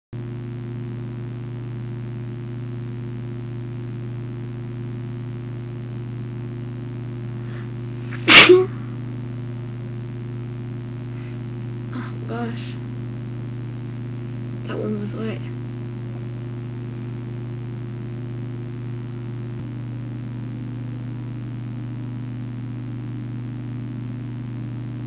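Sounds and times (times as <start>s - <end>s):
low electrical hum: 0.2s - 25.0s
woman sneezing: 8.1s - 8.8s.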